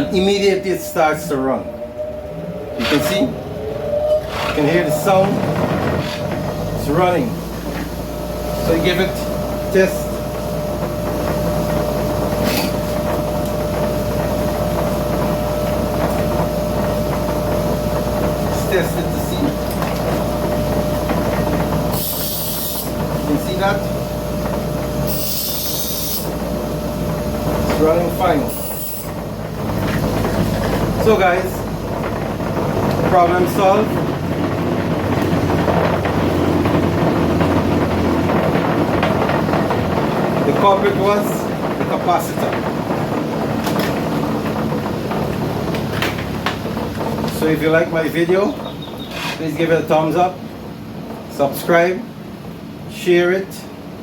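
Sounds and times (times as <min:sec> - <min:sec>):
bench grinder motor running: 0:19.6 - 0:31.2
bench grinder motor humming: 0:24.1 - 0:27.2.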